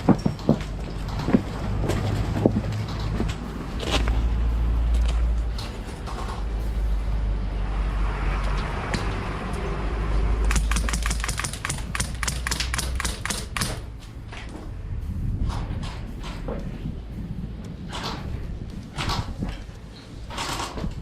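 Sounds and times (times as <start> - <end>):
low rumble of wind: 0.0 - 21.0
airsoft guns firing: 10.5 - 13.8.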